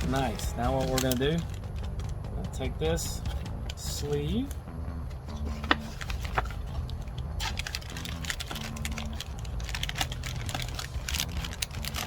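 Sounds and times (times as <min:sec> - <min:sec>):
packaging crinkling and clicking: 0:00.0 - 0:02.0, 0:05.3 - 0:12.0.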